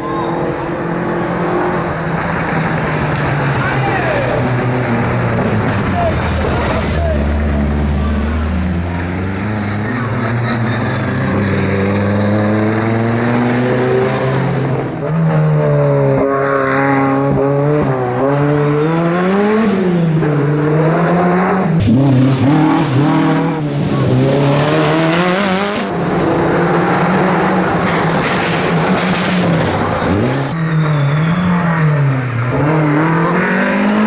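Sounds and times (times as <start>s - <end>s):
rally car engine revving: 0.0s - 34.0s.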